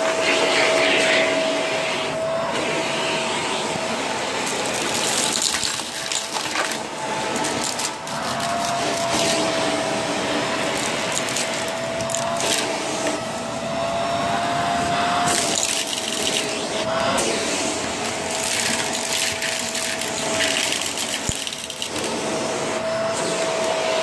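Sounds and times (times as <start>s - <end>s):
vacuum cleaner motor whine: 0.0s - 24.0s
debris clicks and crackles: 4.5s - 9.4s, 10.7s - 12.6s, 18.3s - 22.2s.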